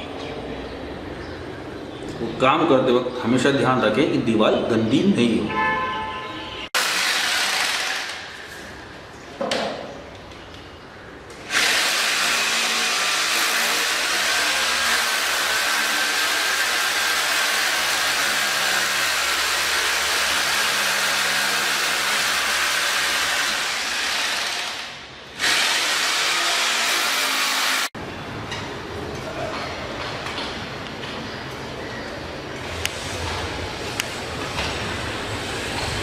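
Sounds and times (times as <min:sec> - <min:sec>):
electric drill drilling into wall: 0:06.8 - 0:08.3, 0:11.5 - 0:27.9.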